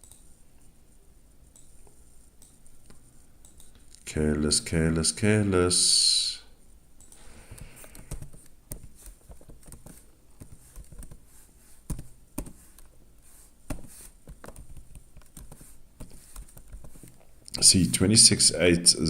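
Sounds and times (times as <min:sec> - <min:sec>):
computer keyboard typing clicks: 0:02.4 - 0:04.0, 0:07.9 - 0:11.2.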